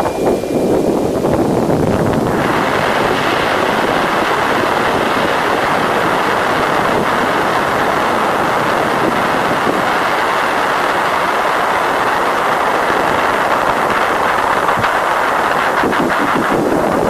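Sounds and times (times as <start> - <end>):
dense steady hiss: 0.0 - 17.0.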